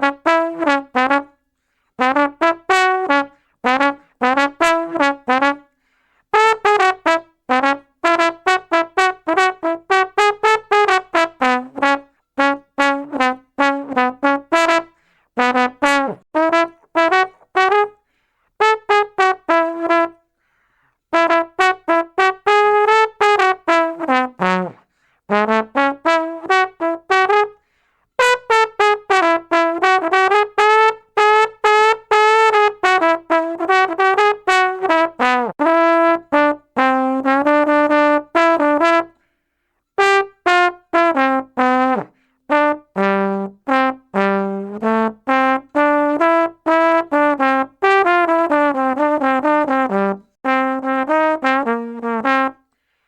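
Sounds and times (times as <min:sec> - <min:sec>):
brass instrument playing short notes: 0:06.3 - 0:20.2, 0:28.2 - 0:39.2, 0:40.0 - 0:52.7.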